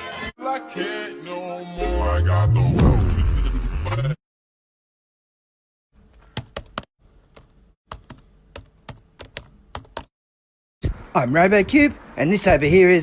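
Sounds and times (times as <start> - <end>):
computer keyboard typing: 6.4 - 10.1.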